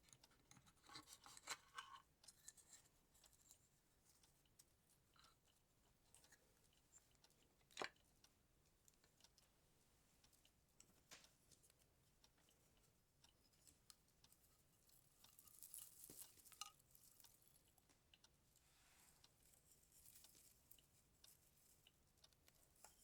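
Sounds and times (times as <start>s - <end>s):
ornaments clicking and tapping: 10.2s - 23.0s.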